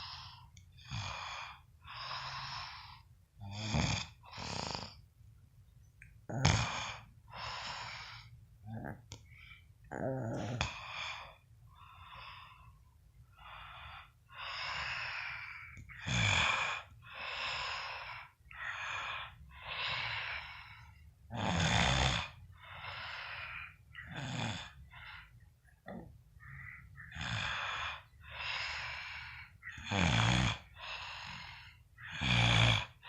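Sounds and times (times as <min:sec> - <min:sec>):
deep snorts: 0:00.8 - 0:05.0, 0:06.3 - 0:09.2, 0:14.4 - 0:20.5, 0:21.3 - 0:24.8, 0:27.0 - 0:33.0
man snoring: 0:03.4 - 0:05.0, 0:06.3 - 0:07.1, 0:16.0 - 0:17.9, 0:21.3 - 0:22.4, 0:24.0 - 0:24.8, 0:27.1 - 0:29.0, 0:29.8 - 0:33.0.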